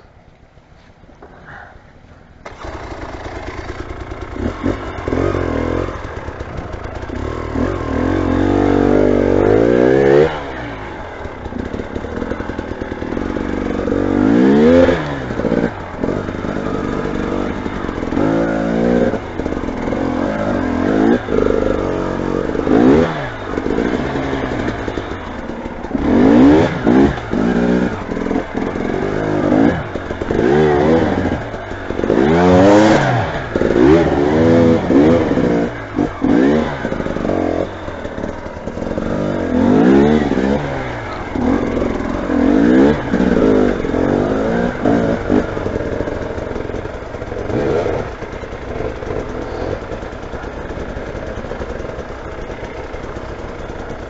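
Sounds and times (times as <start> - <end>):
motorcycle engine revving: 2.4 - 54.0.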